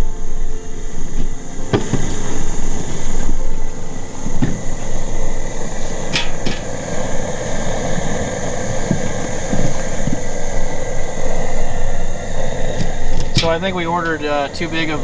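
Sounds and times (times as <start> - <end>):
gas burner roar: 0.0 - 15.0.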